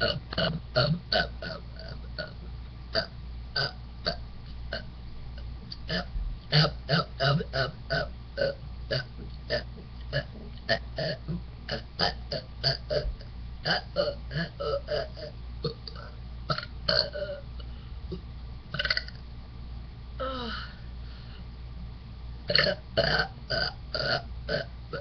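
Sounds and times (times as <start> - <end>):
woman burping: 3.0 - 4.8, 5.9 - 17.4, 18.8 - 19.2, 22.5 - 25.0.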